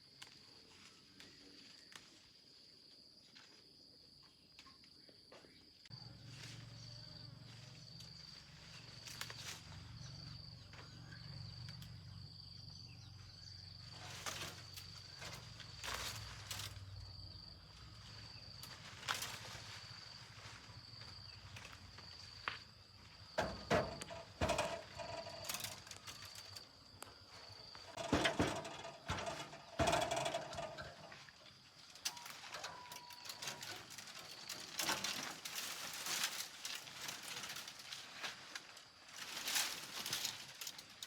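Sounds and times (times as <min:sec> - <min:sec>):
insect chirping trill: 0:00.8 - 0:41.0
handling knocks and clatter: 0:23.3 - 0:31.4.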